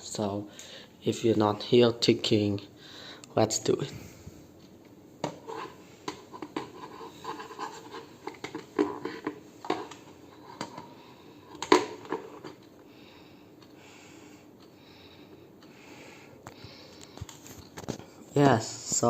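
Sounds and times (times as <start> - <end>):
clock scraping against wall: 5.2 - 12.6.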